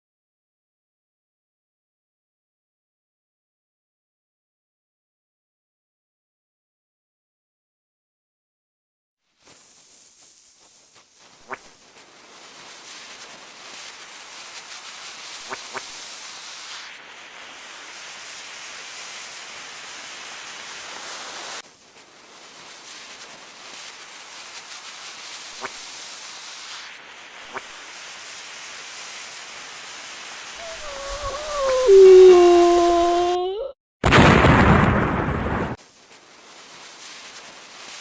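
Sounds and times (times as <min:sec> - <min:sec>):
rushing hiss of noise: 0:09.3 - 0:33.3, 0:35.8 - 0:38.0
short thin chirps: 0:30.6 - 0:33.7.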